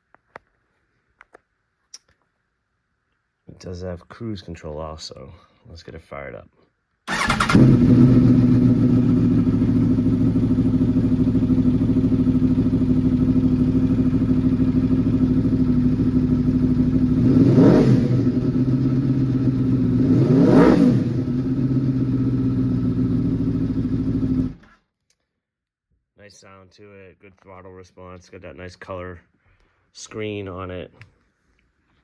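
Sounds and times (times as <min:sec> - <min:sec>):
motorcycle engine idling and revving: 0:07.1 - 0:24.6.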